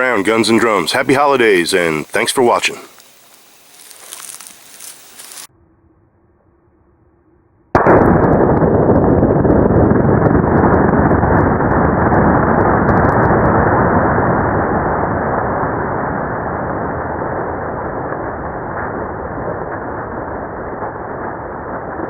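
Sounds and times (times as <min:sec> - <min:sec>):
slow-motion explosion rumble: 0:05.6 - 0:22.0.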